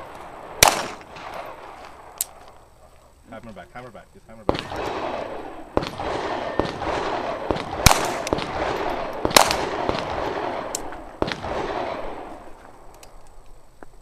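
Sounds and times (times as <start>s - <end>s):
loud pistol shots: 0.4s - 2.1s, 4.5s - 12.4s
faint gunshot cracks: 0.6s - 1.4s, 4.5s - 12.0s.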